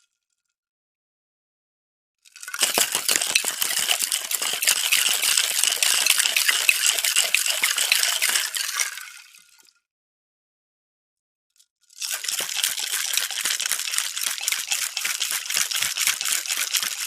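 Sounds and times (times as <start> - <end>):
cocktail shaker rattling: 2.4 - 9.2, 12.0 - 17.0.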